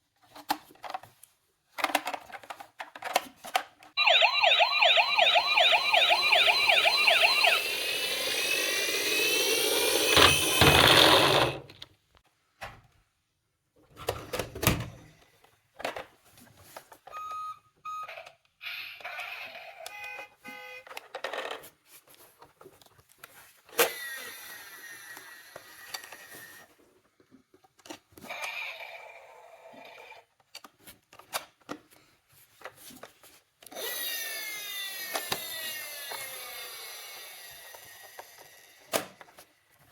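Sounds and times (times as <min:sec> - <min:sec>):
toy cars clicking and knocking: 0:00.2 - 0:04.0, 0:07.3 - 0:11.9, 0:32.6 - 0:39.5
toy sirens wailing: 0:04.0 - 0:11.6, 0:33.9 - 0:38.5.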